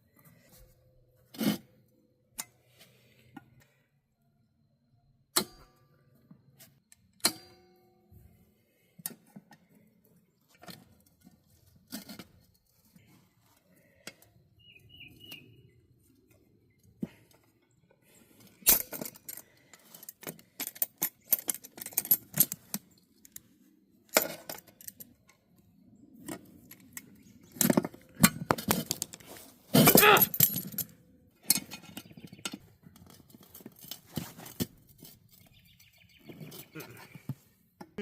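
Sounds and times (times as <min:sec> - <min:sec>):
metal clinks and scrapes on wheel rim: 0:18.4 - 0:23.5, 0:26.4 - 0:37.1.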